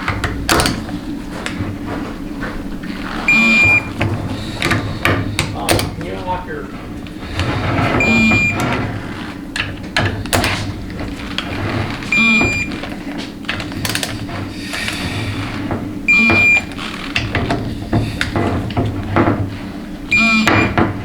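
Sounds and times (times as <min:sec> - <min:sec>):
torque wrench beeping: 0:03.0 - 0:04.0, 0:08.0 - 0:09.3, 0:12.1 - 0:12.8, 0:16.1 - 0:17.0, 0:20.1 - 0:20.8.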